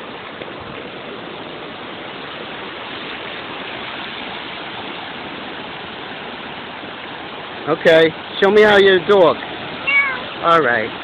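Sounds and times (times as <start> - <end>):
waves breaking: 0.0 - 11.0.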